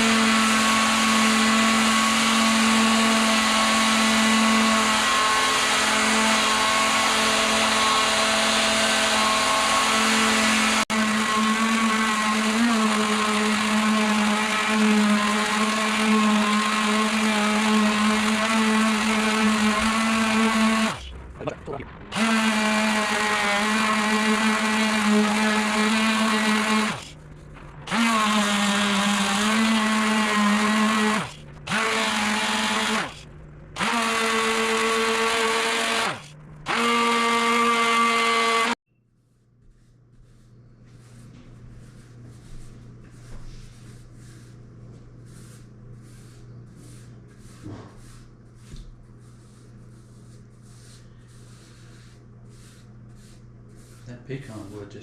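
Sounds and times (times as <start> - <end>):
electric sander whining: 0.0 - 21.1, 22.1 - 27.1, 27.9 - 33.2, 33.8 - 38.8.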